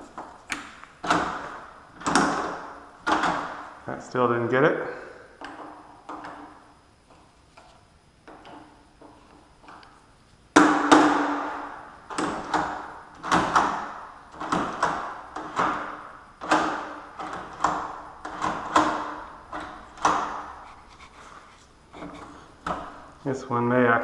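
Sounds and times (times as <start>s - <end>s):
door latch clacking: 0.5s - 3.6s, 12.1s - 20.6s.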